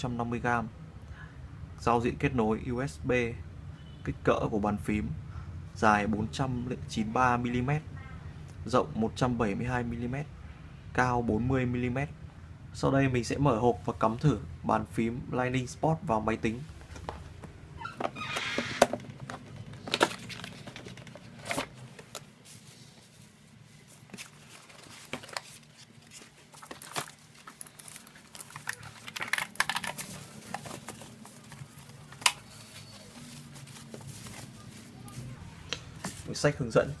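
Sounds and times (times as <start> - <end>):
wrapping crinkling: 23.8 - 35.2.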